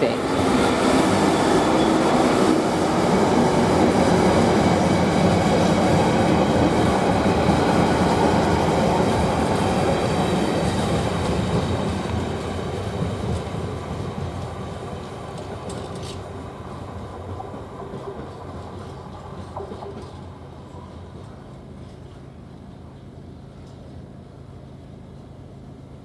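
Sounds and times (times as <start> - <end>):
freight train passing: 0.0 - 26.0
wagon wheels on rails: 15.3 - 16.3.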